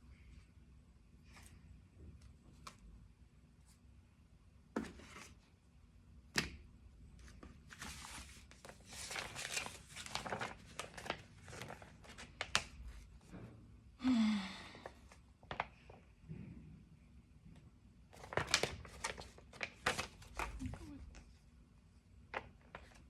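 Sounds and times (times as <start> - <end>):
packaging rustling and crinkling: 7.7 - 12.9, 18.2 - 21.2.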